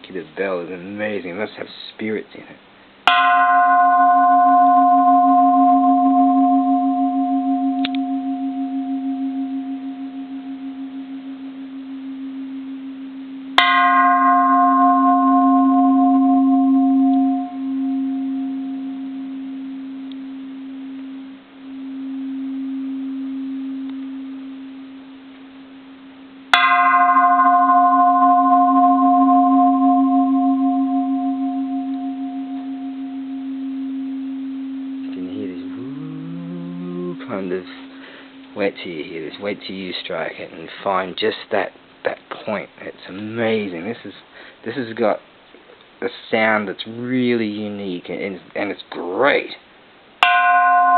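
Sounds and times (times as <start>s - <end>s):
temple bell struck with striker: 3.1s - 13.0s, 13.6s - 21.1s, 26.5s - 39.1s, 50.2s - 50.9s
bell ringing hum: 3.1s - 25.8s, 26.4s - 39.5s, 50.2s - 50.9s.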